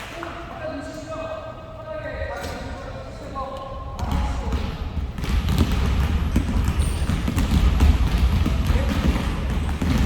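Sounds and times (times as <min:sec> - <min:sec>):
basketballs bouncing on gym floor: 0:04.0 - 0:10.0.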